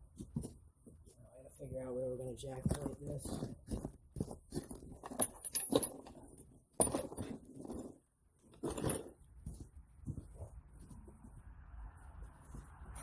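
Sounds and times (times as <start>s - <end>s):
metal tools clinking and rattling: 4.6s - 7.9s.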